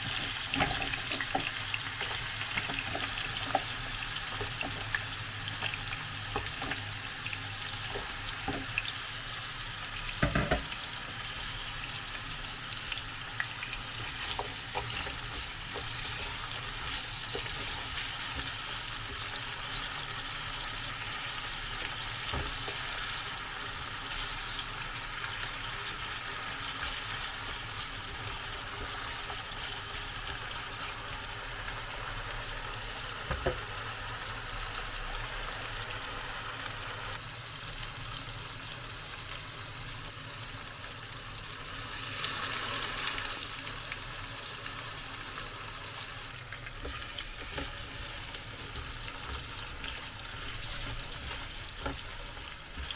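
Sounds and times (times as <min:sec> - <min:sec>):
vegetables sizzling in oil: 0:00.0 - 0:52.9
utensil knocking on pan: 0:10.2 - 0:10.7.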